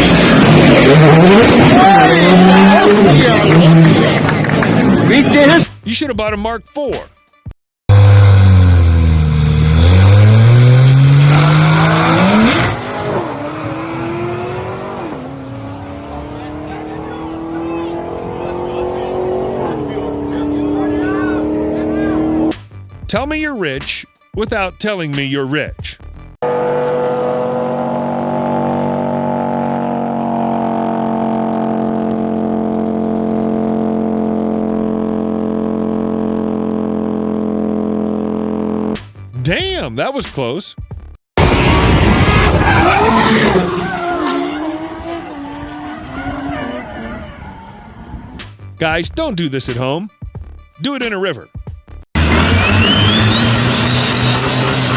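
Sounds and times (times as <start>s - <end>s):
car engine accelerating hard: 0.0s - 5.6s, 7.9s - 22.5s, 26.4s - 39.0s, 41.4s - 48.4s, 52.2s - 54.9s.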